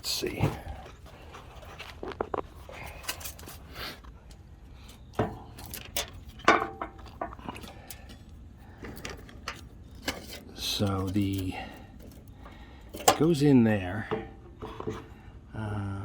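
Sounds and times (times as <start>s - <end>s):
light metal clinks and knocks: 4.3s - 14.6s.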